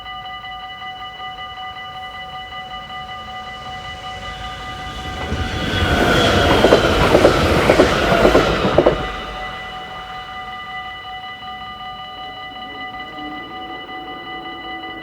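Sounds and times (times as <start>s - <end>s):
train passing: 0.0s - 14.9s
crossing warning bells ringing: 0.0s - 15.0s
wheels clicking over rail joints: 1.4s - 10.8s.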